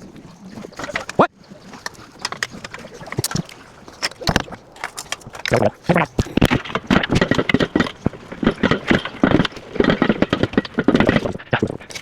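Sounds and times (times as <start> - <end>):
tools and car parts clicking: 1.8 - 12.0.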